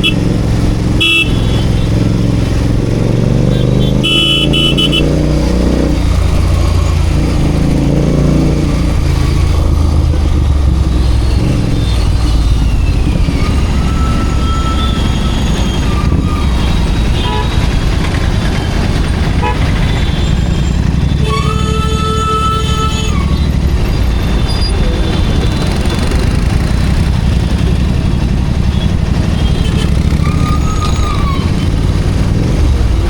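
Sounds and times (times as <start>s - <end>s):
motorcycle engine revving: 0.0s - 33.0s
traffic noise: 0.0s - 33.0s
horn toot: 1.0s - 2.0s, 3.5s - 5.2s, 13.5s - 17.7s, 19.3s - 23.6s.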